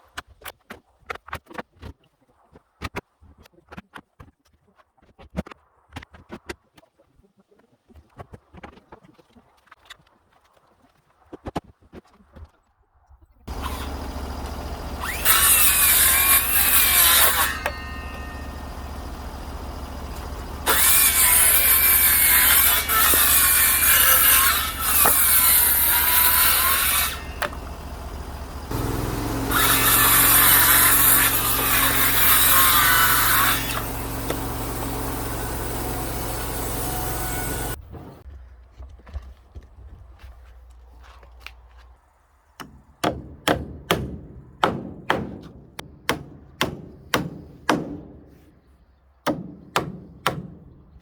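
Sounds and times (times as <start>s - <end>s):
power saw cutting wood: 13.5s - 38.2s, 42.6s - 48.5s, 49.3s - 51.0s.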